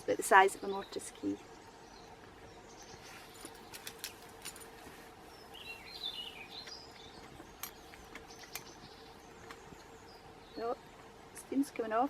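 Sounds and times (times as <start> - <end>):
bird twittering: 5.3 - 11.0.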